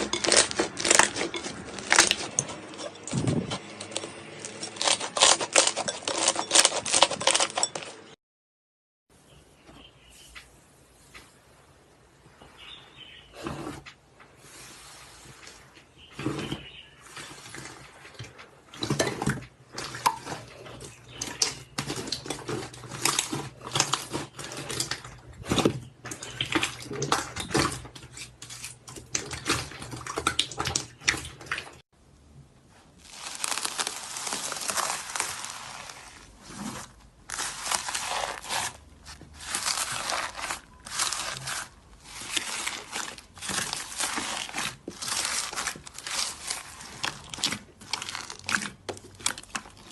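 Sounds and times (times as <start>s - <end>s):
hands squishing slime: 33.0s - 49.9s.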